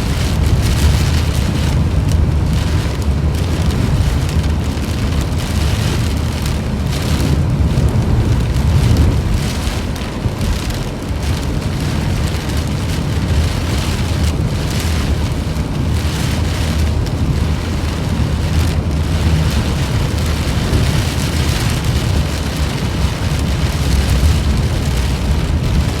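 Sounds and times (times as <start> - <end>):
low rumble: 0.0 - 11.8
rain falling: 0.0 - 26.0.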